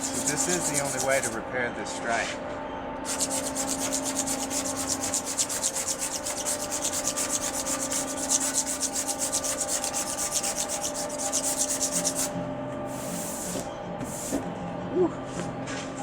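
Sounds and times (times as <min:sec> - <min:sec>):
rubbing strokes on car paint: 0:00.0 - 0:01.4, 0:03.1 - 0:12.3.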